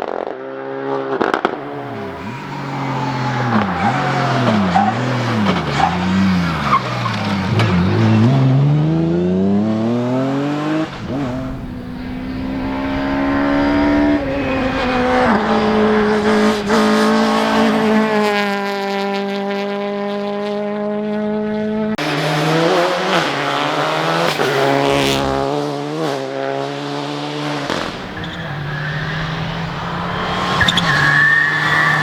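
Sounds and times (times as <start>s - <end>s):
rally car engine revving: 0.4s - 32.0s
tyres skidding: 1.6s - 9.1s, 10.3s - 18.8s, 22.0s - 26.2s, 27.4s - 32.0s.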